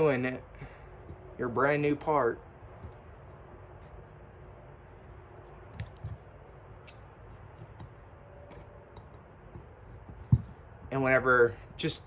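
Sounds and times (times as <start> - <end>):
low steady hum: 0.0 - 12.0
metal parts clicking and tapping: 5.6 - 10.6.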